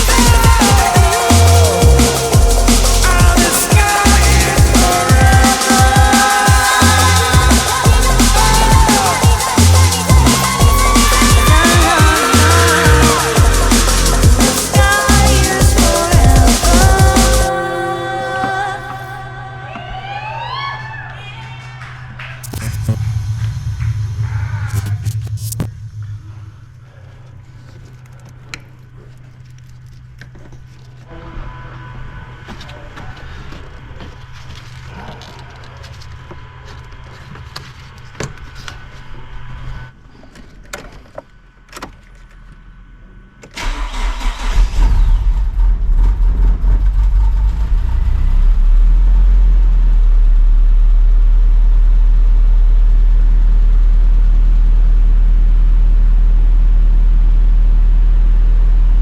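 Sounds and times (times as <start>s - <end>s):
car engine starting and idling: 0.0s - 17.5s, 22.4s - 31.1s, 43.1s - 59.0s
low steady hum: 12.4s - 59.0s.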